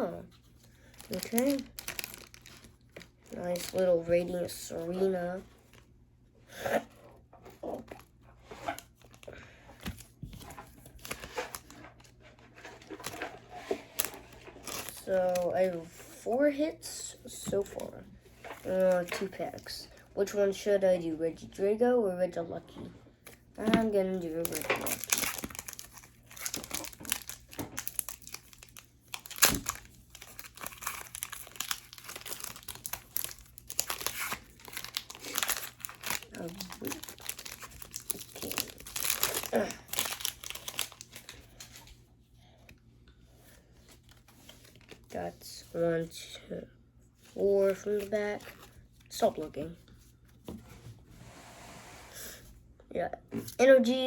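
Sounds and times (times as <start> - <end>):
trading cards rustling: 0.2 - 5.8, 7.6 - 16.7, 17.3 - 21.2, 23.2 - 42.0, 47.2 - 49.4
foil wrapper crinkling: 0.6 - 5.8, 8.8 - 15.8, 23.6 - 41.9
foil wrapper sharp crack: 24.4 - 41.4.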